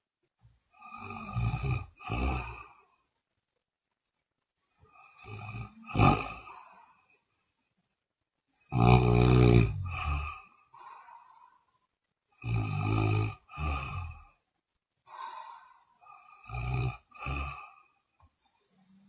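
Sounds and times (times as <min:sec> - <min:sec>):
woman snoring: 0:00.7 - 0:02.8, 0:04.8 - 0:07.1, 0:08.6 - 0:11.6, 0:12.4 - 0:14.4, 0:15.1 - 0:19.0.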